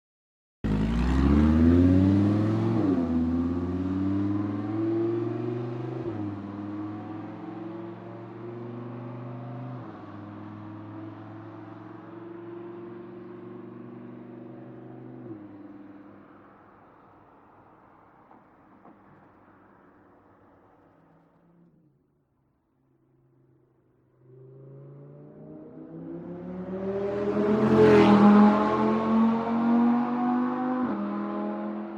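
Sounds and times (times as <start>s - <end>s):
car accelerating through gears: 0.7s - 15.8s, 24.3s - 31.9s.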